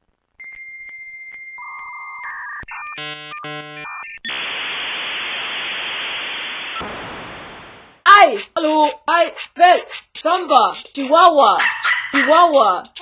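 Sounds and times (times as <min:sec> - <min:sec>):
modem steady hiss: 0:00.0 - 0:08.1
modem stepped electronic tones: 0:00.4 - 0:08.0.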